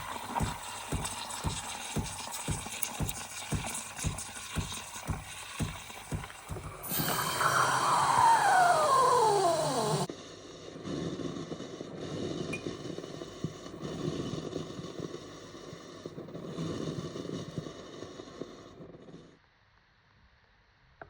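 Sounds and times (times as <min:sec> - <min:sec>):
steam wand hissing: 0:00.0 - 0:10.1.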